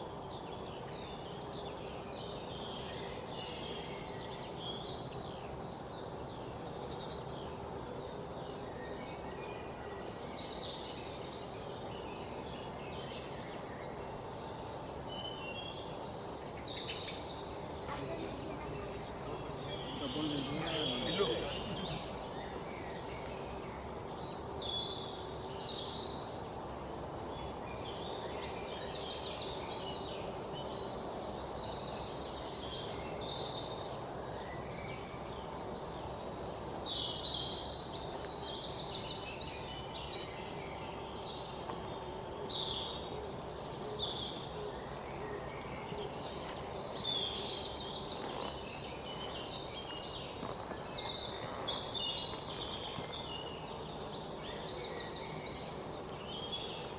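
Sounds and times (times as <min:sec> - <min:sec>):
low background noise: 0:17.8 - 0:22.4.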